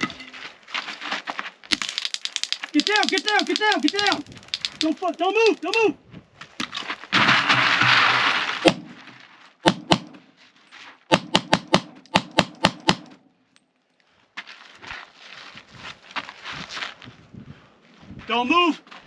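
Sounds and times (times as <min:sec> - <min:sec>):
gunshots: 0:08.6 - 0:08.9, 0:09.7 - 0:10.2, 0:11.1 - 0:13.2.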